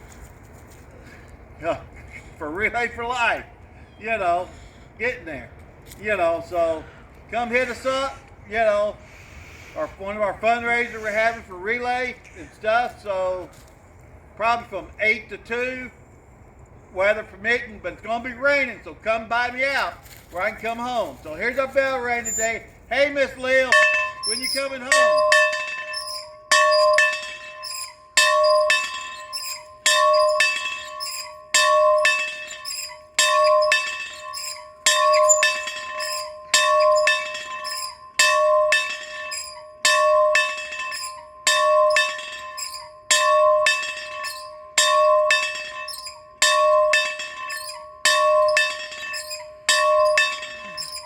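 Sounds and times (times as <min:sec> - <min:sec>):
bell ringing: 0:23.5 - 0:51.0.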